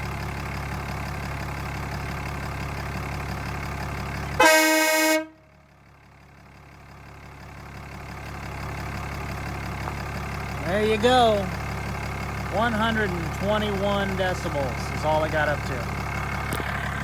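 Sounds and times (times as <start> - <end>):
truck engine idling: 0.0 - 17.0
loud air horn blast: 4.4 - 5.5.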